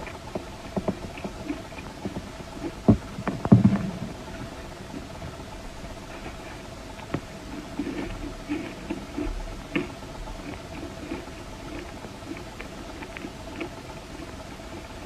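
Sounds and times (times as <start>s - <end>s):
ice being chewed: 0.0s - 5.1s, 5.9s - 15.0s.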